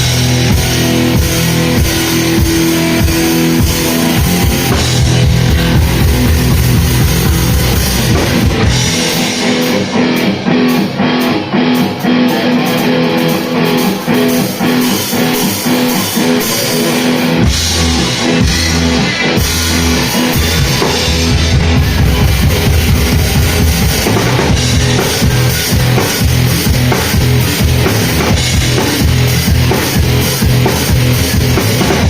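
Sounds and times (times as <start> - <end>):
bass and kick drum: 0.0 - 10.1, 17.3 - 32.0
drum kit: 0.0 - 32.0
electric guitar: 0.0 - 32.0
rock band playing: 0.0 - 32.0.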